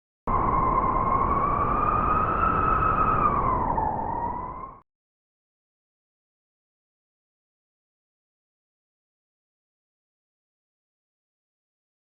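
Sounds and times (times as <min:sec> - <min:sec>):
wind howling and whistling: 0:00.3 - 0:04.8.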